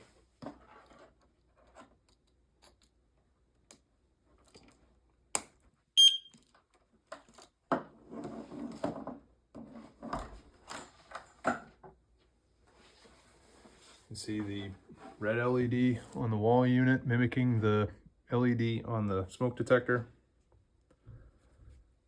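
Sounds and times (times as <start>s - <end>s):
smoke detector beep: 6.0s - 6.3s.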